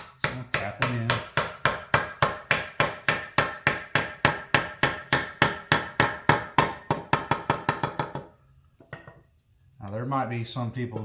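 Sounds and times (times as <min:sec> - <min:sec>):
hammer tapping metal: 0:00.0 - 0:08.3.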